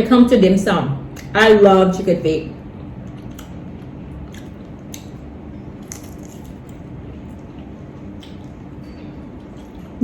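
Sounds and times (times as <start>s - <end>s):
quiet chewing: 3.1s - 5.2s, 9.4s - 10.0s.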